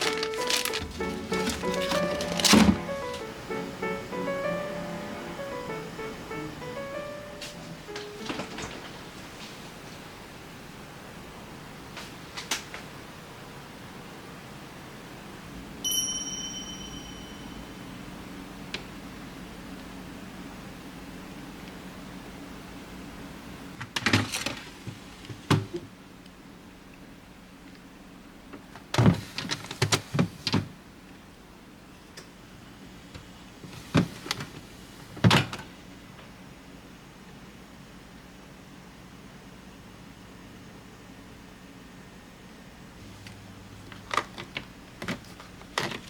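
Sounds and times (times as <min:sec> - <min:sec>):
refrigerator doors and drawers knocking: 0:00.0 - 0:03.2
bright ding: 0:15.8 - 0:17.8.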